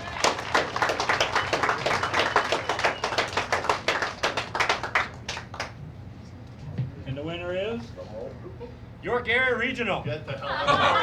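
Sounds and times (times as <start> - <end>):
small crowd clapping: 0.0 - 5.8.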